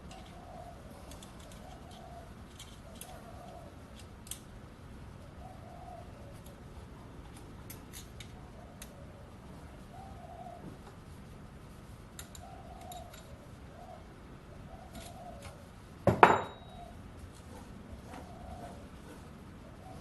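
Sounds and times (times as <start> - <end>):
small metal parts clicking: 0.0 - 0.4, 1.0 - 4.5, 7.6 - 8.9, 12.2 - 13.3
dove cooing: 0.0 - 3.9, 5.2 - 6.6, 8.4 - 11.0, 12.3 - 15.7, 17.7 - 20.0.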